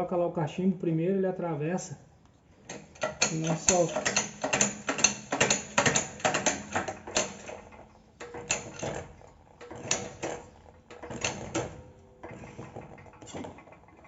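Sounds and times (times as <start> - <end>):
metal tools clinking: 2.7 - 9.0.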